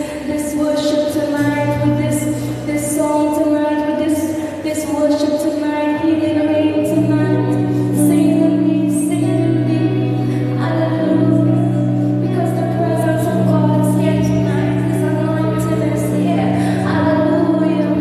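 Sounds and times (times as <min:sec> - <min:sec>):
gospel singing over held chords: 0:00.0 - 0:18.0.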